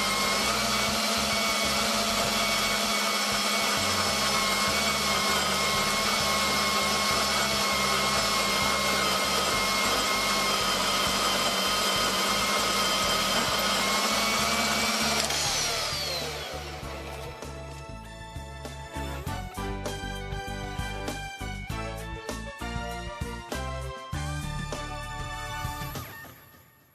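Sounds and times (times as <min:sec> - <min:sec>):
bandsaw motor whine: 0:00.0 - 0:18.3.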